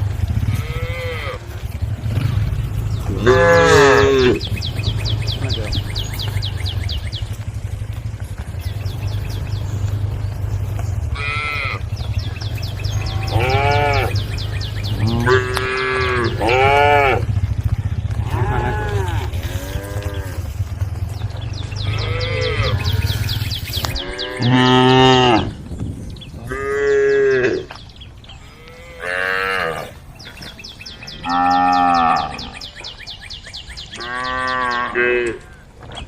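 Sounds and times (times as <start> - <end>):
cattle mooing: 0.1 - 6.1, 11.1 - 20.8, 21.7 - 25.6, 26.4 - 27.7, 28.5 - 30.0, 31.2 - 32.6, 34.0 - 35.6.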